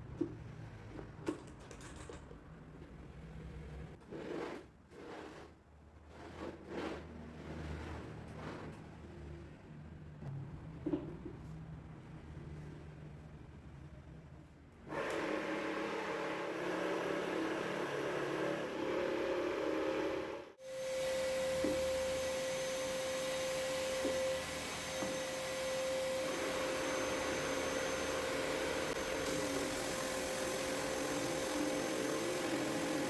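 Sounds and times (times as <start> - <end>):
drum sander motor humming: 14.9 - 33.0.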